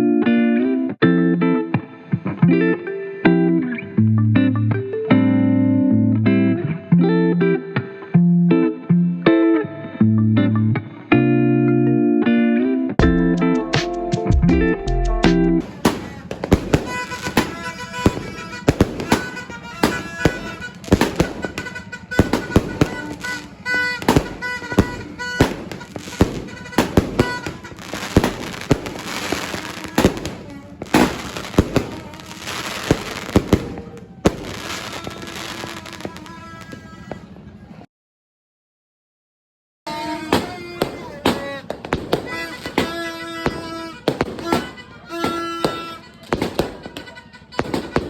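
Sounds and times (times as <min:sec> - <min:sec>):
background music: 0:00.0 - 0:21.4, 0:22.2 - 0:36.1
fireworks crackling hiss: 0:15.6 - 0:37.3, 0:39.9 - 0:48.0
fireworks sharp bangs: 0:15.6 - 0:37.5, 0:39.9 - 0:48.0.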